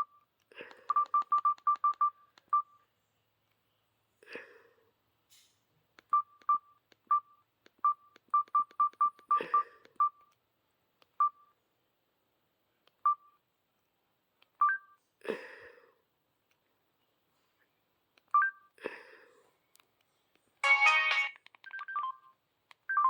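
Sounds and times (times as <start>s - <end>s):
phone keypad beeps: 0.8s - 2.8s, 6.1s - 10.3s, 13.0s - 13.4s, 14.6s - 15.0s, 18.3s - 18.7s, 20.8s - 22.3s.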